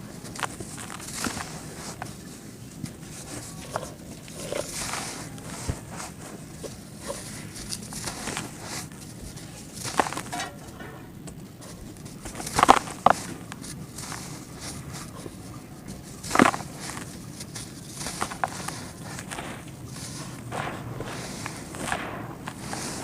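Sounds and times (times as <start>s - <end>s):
dirt lumps crumbling: 16.2s - 23.0s.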